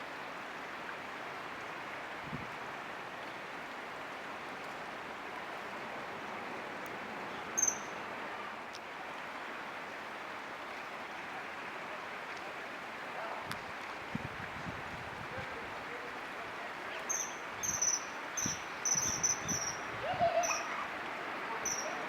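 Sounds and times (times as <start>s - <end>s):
flowing water rushing: 0.0s - 22.0s
kingfisher shrill call: 7.6s - 7.9s, 17.1s - 20.8s, 21.6s - 22.0s.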